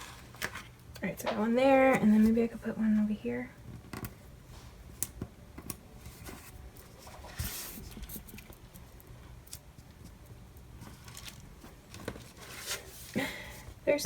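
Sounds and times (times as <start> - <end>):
faint paper rustles: 6.0 - 8.9, 10.8 - 14.0.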